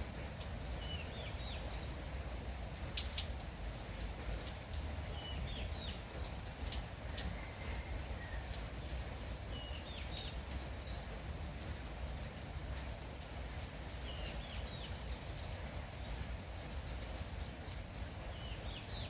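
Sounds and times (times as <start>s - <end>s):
light rain falling: 0.0s - 19.0s
sharp drips: 0.0s - 19.0s
small bird singing: 0.7s - 2.2s, 5.1s - 11.5s, 13.9s - 16.2s, 16.9s - 19.0s.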